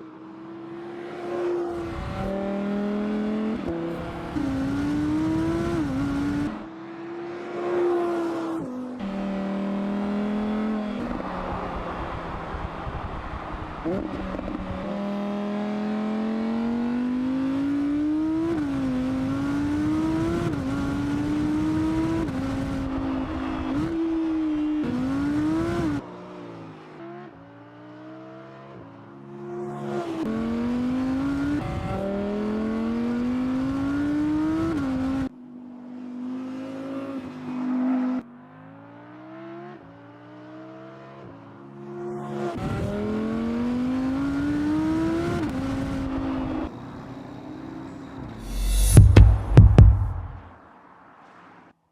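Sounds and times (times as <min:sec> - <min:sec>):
car engine accelerating hard: 0:00.6 - 0:08.4, 0:09.0 - 0:28.7, 0:47.7 - 0:50.5.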